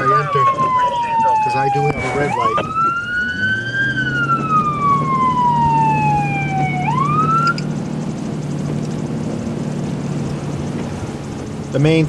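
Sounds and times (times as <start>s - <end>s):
electronic siren wailing: 0.0s - 7.8s
moving vehicle hum: 0.0s - 12.0s.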